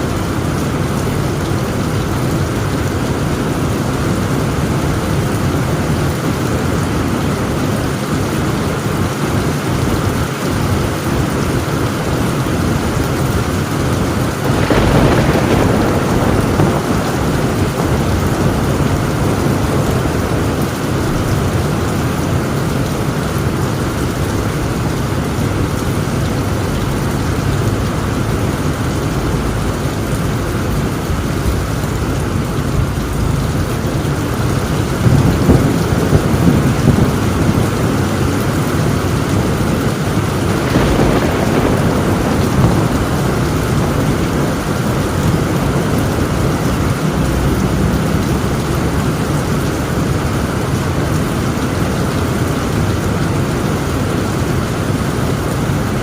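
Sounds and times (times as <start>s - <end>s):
rain on a tin roof: 0.0s - 56.0s
thunder rumbling: 0.0s - 56.0s
thunderclap: 12.5s - 50.8s.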